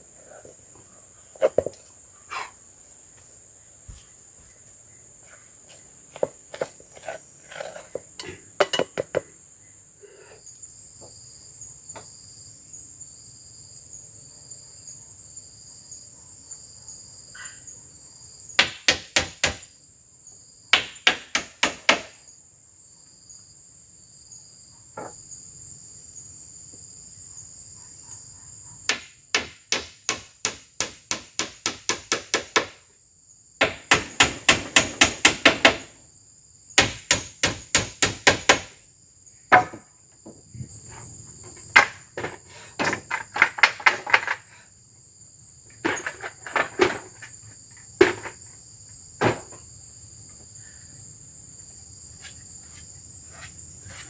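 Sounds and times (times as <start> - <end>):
insects shrilling: 0.0 - 8.6.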